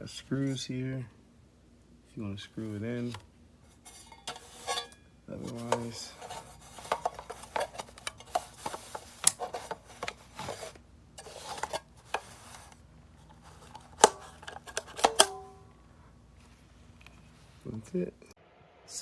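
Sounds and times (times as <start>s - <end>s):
hard drive handled by hand: 2.9s - 15.7s.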